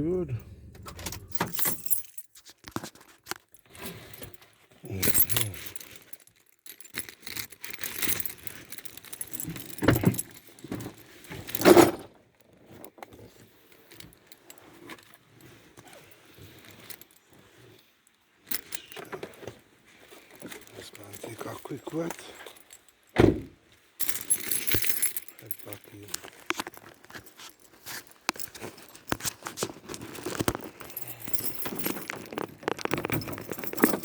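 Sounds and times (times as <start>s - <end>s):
clinking and rustling handling noise: 0.6s - 34.0s.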